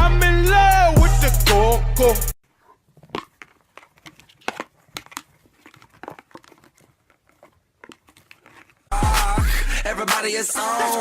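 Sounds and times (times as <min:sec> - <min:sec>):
paper crinkling and tearing: 0:03.6 - 0:08.9.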